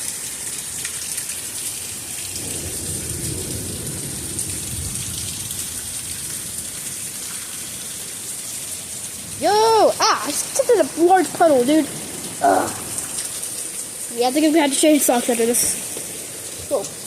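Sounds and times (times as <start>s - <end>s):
heavy rain pouring: 0.0s - 17.0s
low rumble of thunder: 2.3s - 7.8s, 11.0s - 16.7s.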